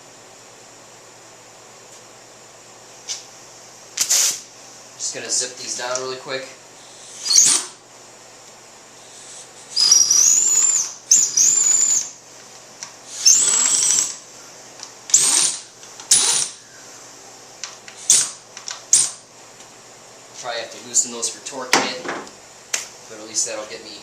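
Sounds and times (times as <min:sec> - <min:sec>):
power driver motor whine: 0:13.1 - 0:14.5.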